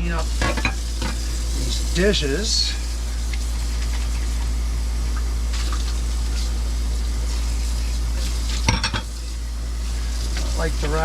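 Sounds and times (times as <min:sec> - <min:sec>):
air conditioner humming: 0:00.0 - 0:11.0.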